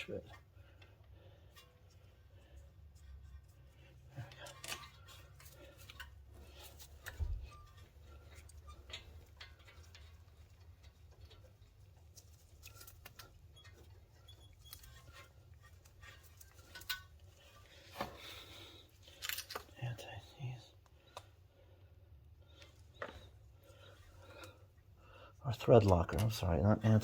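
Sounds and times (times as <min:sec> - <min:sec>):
hands handling small parts: 0:00.0 - 0:19.8.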